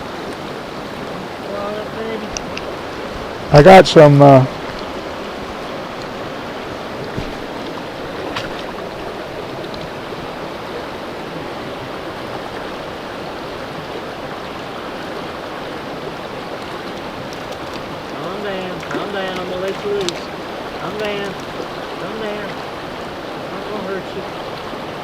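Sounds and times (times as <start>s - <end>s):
creek flowing: 0.0s - 25.0s
faint ticks: 2.3s - 2.7s.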